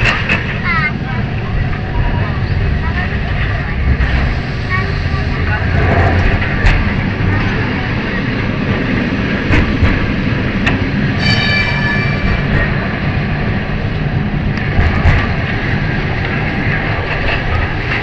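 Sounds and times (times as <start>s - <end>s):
tram rumbling on rails: 0.0s - 18.0s
high tone: 11.2s - 12.9s.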